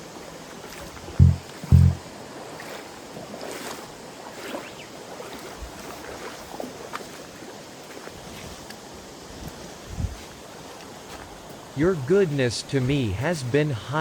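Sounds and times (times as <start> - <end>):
loud low thump: 1.2 - 2.0.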